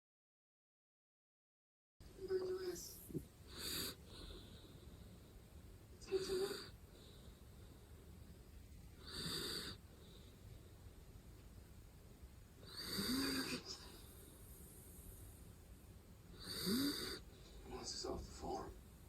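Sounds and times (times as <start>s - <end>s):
dog snoring with whistle: 3.1s - 4.0s, 9.0s - 9.8s, 12.6s - 13.7s, 16.4s - 17.2s.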